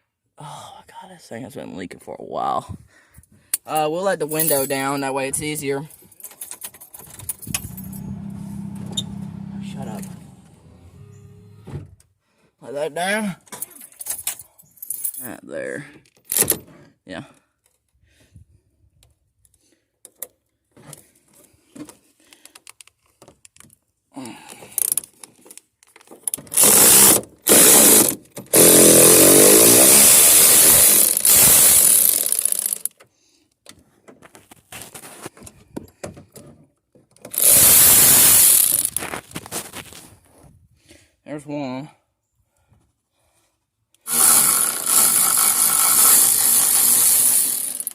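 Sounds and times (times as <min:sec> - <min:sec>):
power tool running in bursts: 0:07.4 - 0:11.7, 0:26.6 - 0:32.8, 0:37.4 - 0:38.9, 0:44.1 - 0:47.9.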